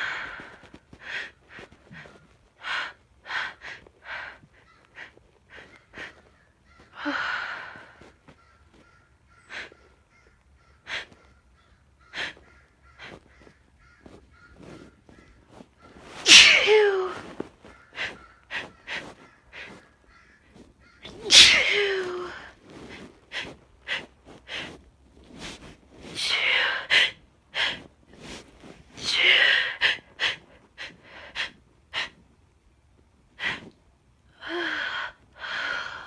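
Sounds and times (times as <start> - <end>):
sniffs and catching breaths: 0.0 - 10.0, 17.2 - 19.9, 20.5 - 32.3
woman sneezing: 16.2 - 17.3, 21.1 - 22.4.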